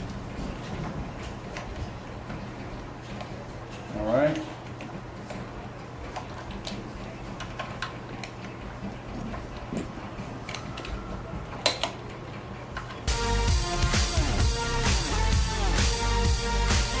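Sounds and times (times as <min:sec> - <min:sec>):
music with guitar and drums: 0:13.1 - 0:17.0.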